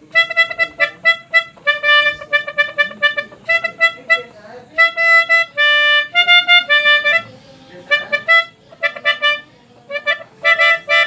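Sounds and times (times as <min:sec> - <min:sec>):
musical air horn tune: 0:00.0 - 0:11.0.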